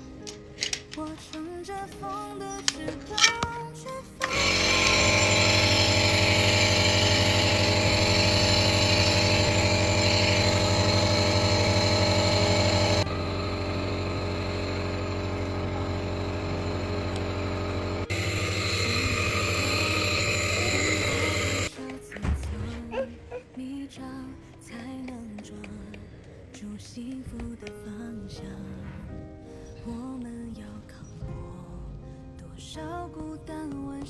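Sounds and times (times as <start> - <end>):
nebulizer motor hum: 4.2 - 21.7.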